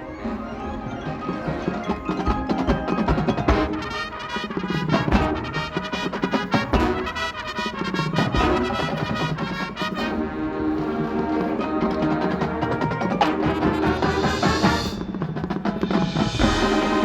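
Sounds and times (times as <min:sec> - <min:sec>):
drums: 0:00.0 - 0:17.0
mallet percussion: 0:00.0 - 0:17.0
marching band playing: 0:00.0 - 0:17.0
sustained wind chords: 0:16.1 - 0:17.0.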